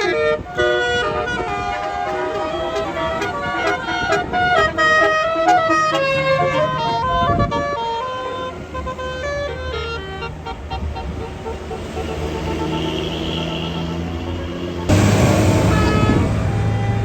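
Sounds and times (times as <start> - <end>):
musical bus horn playing a tune: 0.0 - 17.0
bus engine running: 10.3 - 17.0.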